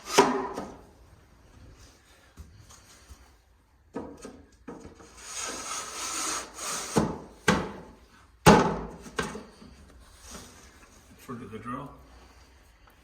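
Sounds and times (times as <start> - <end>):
sharp wooden knocks: 8.4 - 9.4.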